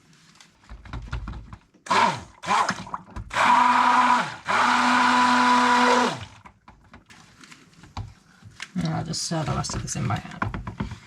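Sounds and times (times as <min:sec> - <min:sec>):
stick blender whirring: 0:01.8 - 0:06.5.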